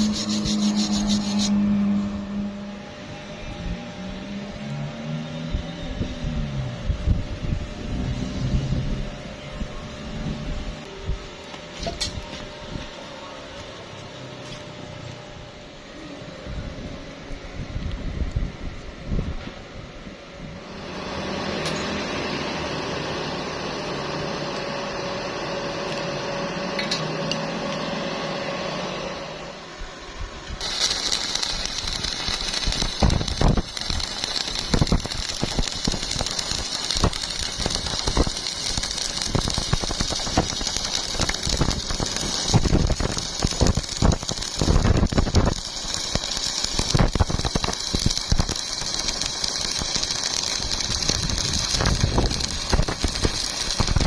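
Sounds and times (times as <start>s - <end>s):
electric arc welding crackle: 0.0s - 2.7s, 30.6s - 54.0s
machine hum with held tone: 0.0s - 8.0s.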